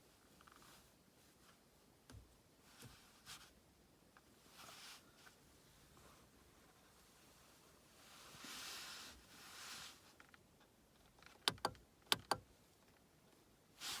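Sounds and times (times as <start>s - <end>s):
sharp clicks: 11.3s - 12.4s
hiss: 13.8s - 14.0s.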